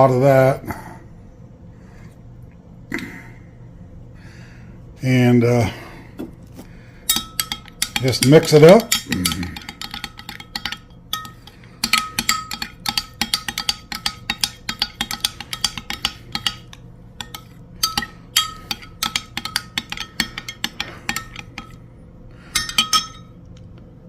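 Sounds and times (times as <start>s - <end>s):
spoon clinking against bowl: 7.1s - 21.8s, 22.5s - 23.4s.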